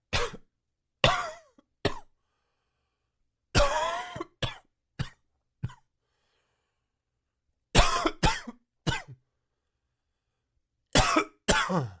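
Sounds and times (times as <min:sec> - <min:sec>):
man coughing: 0:11.0 - 0:12.0.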